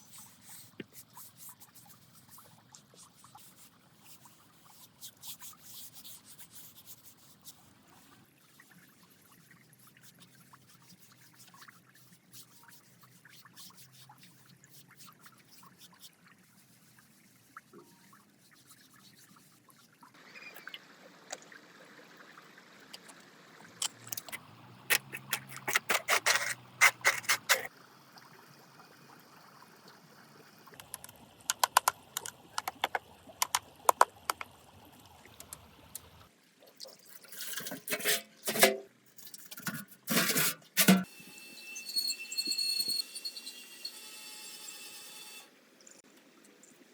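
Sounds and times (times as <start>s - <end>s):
water trickling and pouring: 7.7s - 38.0s
sharp clicks and taps: 30.8s - 34.6s.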